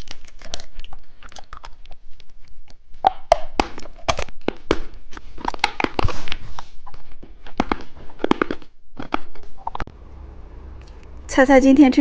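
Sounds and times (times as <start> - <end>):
candy crunching: 0.0 - 9.6.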